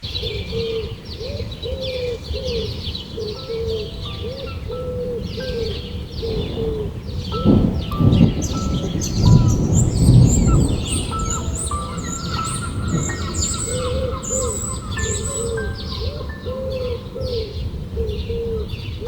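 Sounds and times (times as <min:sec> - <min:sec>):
birds calling and chirping: 0:00.0 - 0:19.0
steady low background noise: 0:00.0 - 0:19.0
thin bird whistles: 0:08.0 - 0:16.0.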